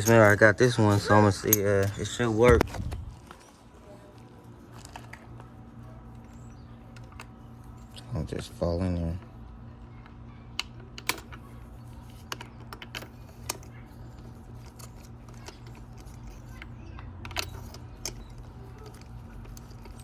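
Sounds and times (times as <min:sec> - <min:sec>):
hand tools clicking and tapping: 0:00.0 - 0:03.4, 0:17.3 - 0:20.0
steady low hum: 0:00.0 - 0:20.0.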